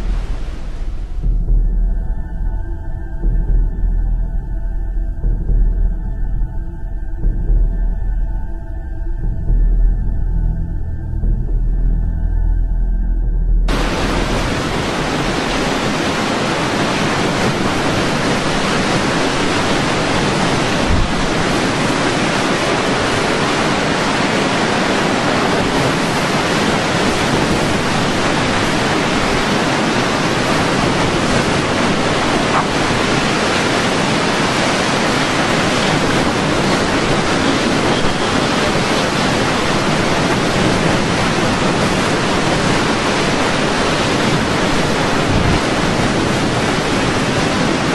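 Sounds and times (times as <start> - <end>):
low thump: 0.0 - 2.6, 3.2 - 4.6, 5.2 - 6.3
strong wind on microphone: 13.6 - 47.9.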